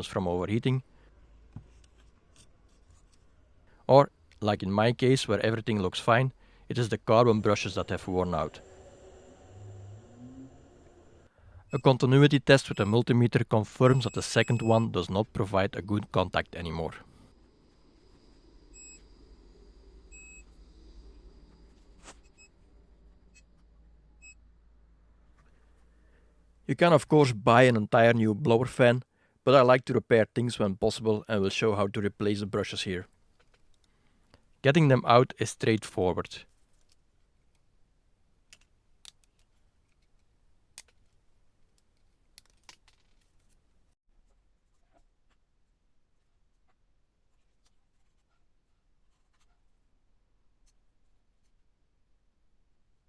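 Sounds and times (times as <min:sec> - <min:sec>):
click: 0:38.5 - 0:43.6.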